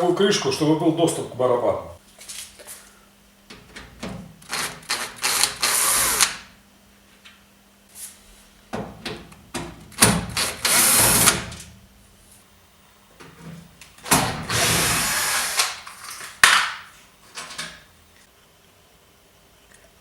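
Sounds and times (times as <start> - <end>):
cordless drill running: 4.5 - 6.4, 10.4 - 11.5, 14.4 - 15.8.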